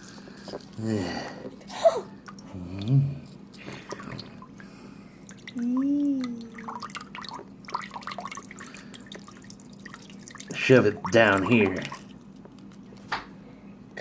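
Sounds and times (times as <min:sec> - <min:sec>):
water dripping and trickling: 0:02.2 - 0:12.9
small wet clicks: 0:02.2 - 0:13.2
person humming: 0:02.5 - 0:03.3, 0:05.5 - 0:06.9.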